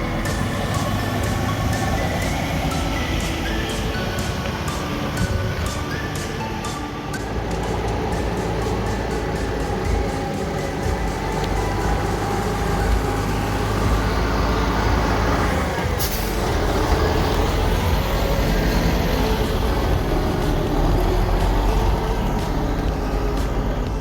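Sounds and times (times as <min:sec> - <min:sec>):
diesel truck engine: 0:00.0 - 0:24.0
air brake hiss: 0:16.0 - 0:16.9.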